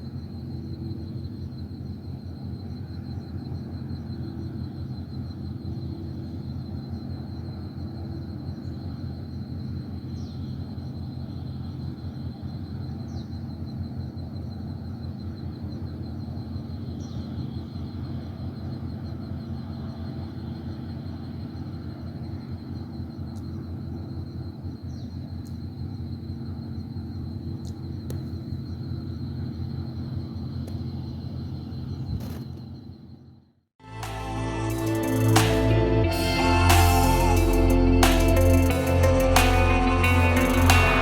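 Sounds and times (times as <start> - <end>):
insect pulsing trill: 0.0 - 41.0
steady low drone: 33.8 - 41.0.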